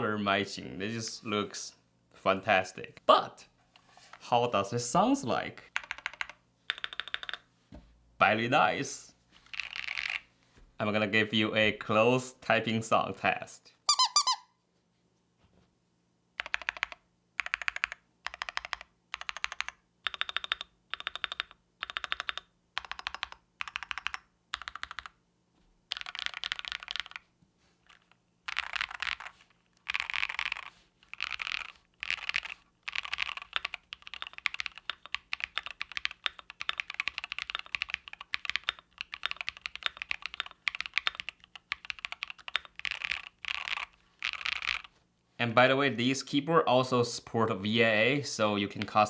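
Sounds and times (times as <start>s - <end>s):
mechanical keyboard typing: 5.8s - 7.4s, 9.5s - 10.2s, 16.4s - 25.2s, 25.9s - 27.2s, 27.9s - 44.9s.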